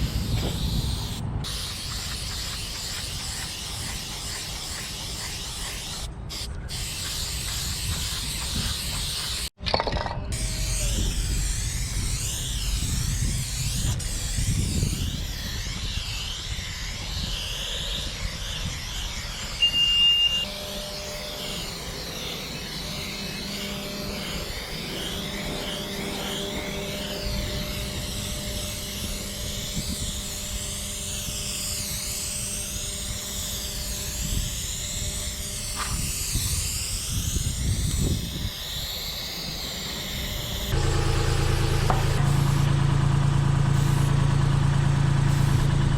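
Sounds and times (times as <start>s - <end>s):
spray can hissing: 0.0s - 9.5s, 10.4s - 20.4s, 21.2s - 42.7s, 43.7s - 44.1s, 45.3s - 45.7s
low rumble: 40.7s - 44.7s.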